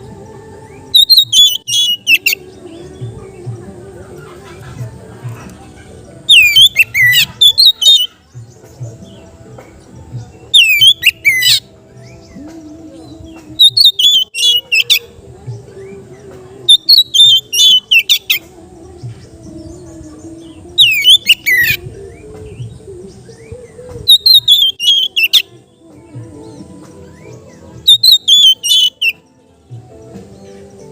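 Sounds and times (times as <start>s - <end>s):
bird singing whistles: 0.7s - 2.4s, 6.3s - 8.1s, 10.5s - 12.4s, 13.6s - 15.0s, 16.7s - 18.4s, 20.8s - 22.2s, 23.4s - 25.5s, 27.9s - 29.2s.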